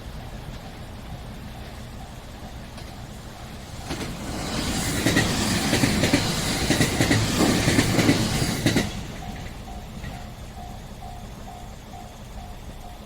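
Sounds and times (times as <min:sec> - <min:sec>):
crossing warning bell ringing: 0:00.0 - 0:04.2, 0:05.1 - 0:13.0
train wheels clattering over rails: 0:00.2 - 0:13.0.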